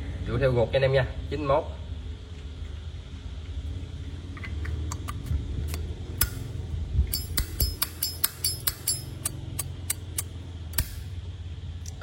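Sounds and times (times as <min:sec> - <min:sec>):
lighter metal clinks and clicks: 0:05.7 - 0:06.5, 0:07.1 - 0:11.1.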